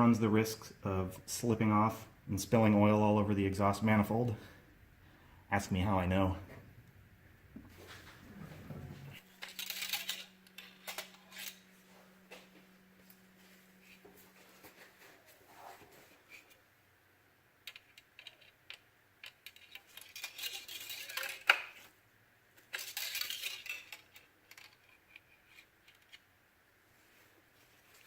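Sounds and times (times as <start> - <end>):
scraping rustles: 7.7 - 16.6, 19.5 - 22.0.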